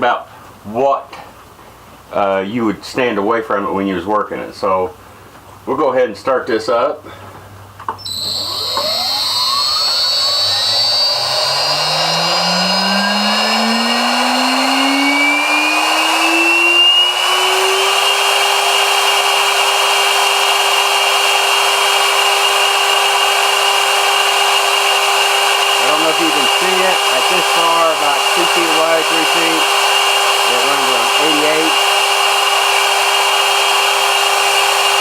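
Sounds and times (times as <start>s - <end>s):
spindle motor whine spinning up: 7.9s - 35.0s
thin high whine: 8.0s - 20.4s, 21.2s - 34.4s.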